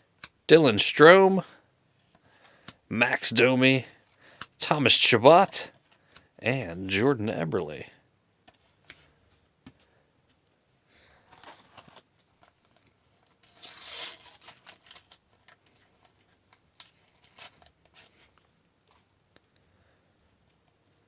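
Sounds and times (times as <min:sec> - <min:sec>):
wrapper rustling and tearing: 0:11.4 - 0:18.4.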